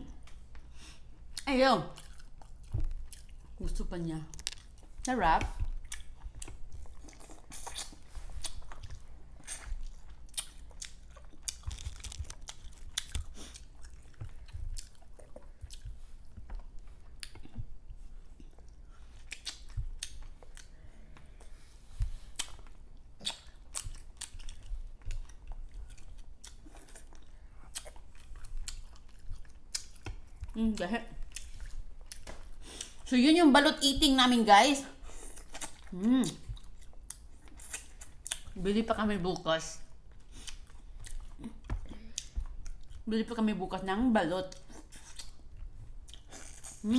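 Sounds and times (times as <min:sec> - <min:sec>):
wet chewing and smacking: 0:00.1 - 0:33.1, 0:35.0 - 0:38.6, 0:39.8 - 0:43.1, 0:44.4 - 0:46.9
small crunches: 0:10.8 - 0:14.2.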